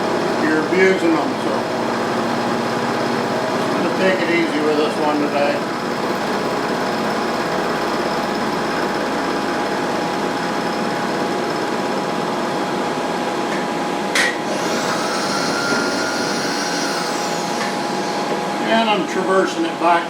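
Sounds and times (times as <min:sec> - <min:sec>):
milling machine grinding: 0:00.0 - 0:12.9, 0:14.4 - 0:18.6.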